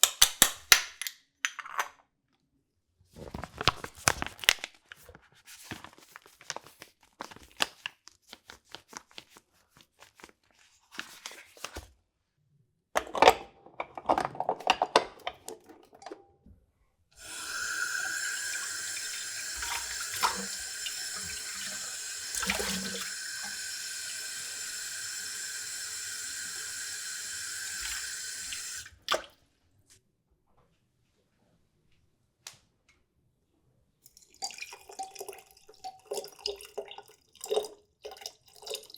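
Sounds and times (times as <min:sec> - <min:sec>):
water running: 0:17.2 - 0:29.3.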